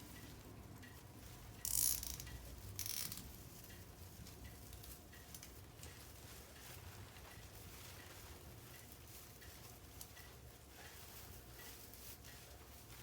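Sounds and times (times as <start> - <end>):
faint handling sounds: 0.0 - 13.0
plastic rustling scrapes: 4.1 - 13.0.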